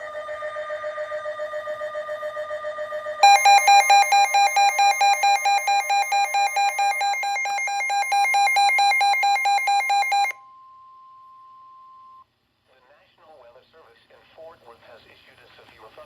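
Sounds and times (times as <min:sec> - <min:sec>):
faint steady tone: 0:00.0 - 0:12.5
two-tone emergency alert tone: 0:00.1 - 0:12.2.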